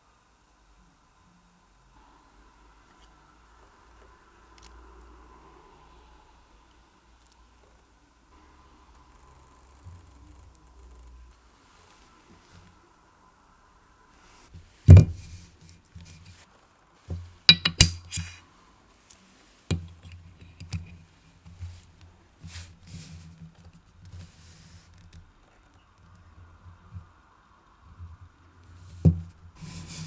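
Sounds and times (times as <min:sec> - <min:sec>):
light taps and handling noises: 0:14.5 - 0:18.4, 0:19.0 - 0:27.1, 0:27.9 - 0:30.0
sharp knock on workbench: 0:14.9 - 0:15.3, 0:17.1 - 0:18.0.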